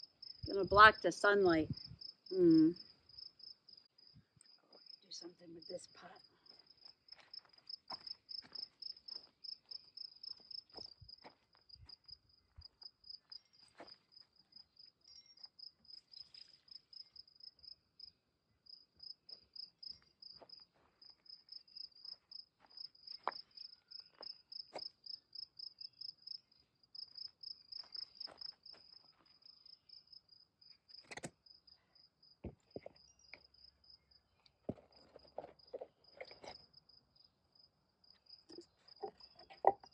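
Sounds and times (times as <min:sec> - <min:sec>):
insects chirping: 0:00.0 - 0:39.9.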